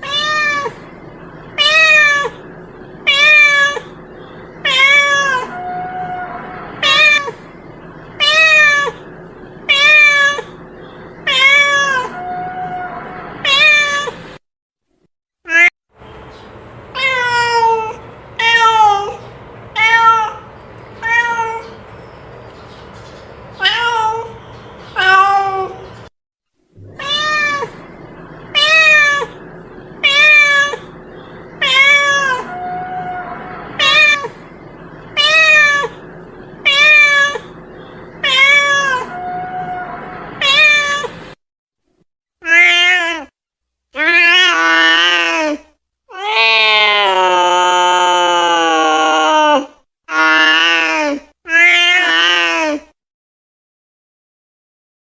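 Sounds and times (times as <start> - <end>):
cat meowing: 0.0 - 0.8, 1.6 - 2.4, 3.0 - 4.0, 4.6 - 7.4, 8.2 - 9.0, 9.7 - 10.6, 11.2 - 14.2, 17.0 - 19.2, 19.8 - 21.8, 23.6 - 24.4, 25.0 - 25.8, 26.8 - 27.8, 28.5 - 29.4, 30.0 - 30.9, 31.6 - 34.4, 35.2 - 36.0, 36.6 - 37.6, 38.2 - 41.2, 42.4 - 43.3, 51.5 - 52.7.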